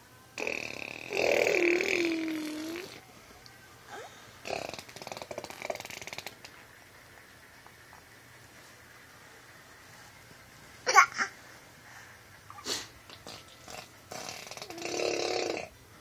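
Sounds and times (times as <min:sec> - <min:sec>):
baby blowing raspberries: 0:00.4 - 0:03.0, 0:03.9 - 0:06.5, 0:12.5 - 0:15.7.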